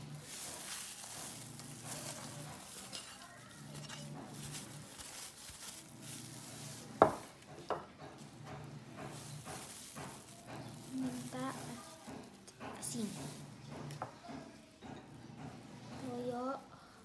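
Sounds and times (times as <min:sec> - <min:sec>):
food handling in bowl: 0:00.0 - 0:07.5, 0:08.2 - 0:14.0.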